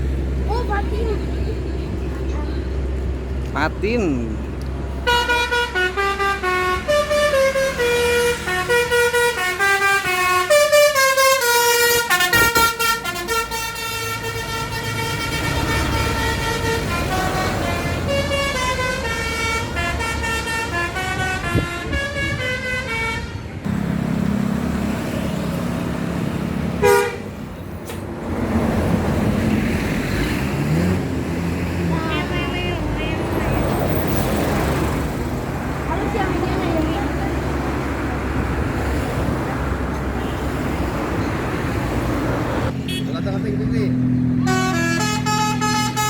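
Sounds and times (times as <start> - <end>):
bus engine running: 0.0 - 46.0
musical bus horn: 5.0 - 23.7, 26.8 - 27.4, 44.4 - 46.0
short horn blast: 5.1 - 23.4, 26.8 - 27.3, 44.4 - 46.0.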